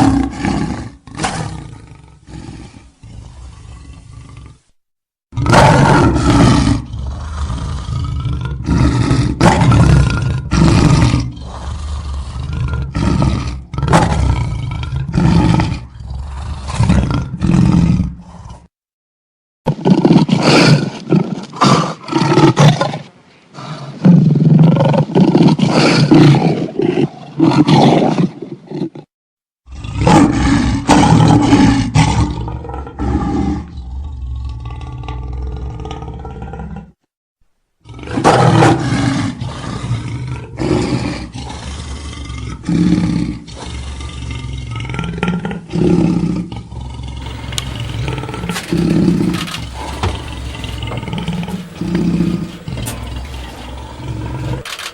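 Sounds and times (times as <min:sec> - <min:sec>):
lion roaring and grunting: 0:00.0 - 0:04.7, 0:05.4 - 0:18.7, 0:29.7 - 0:37.0, 0:37.8 - 0:54.9.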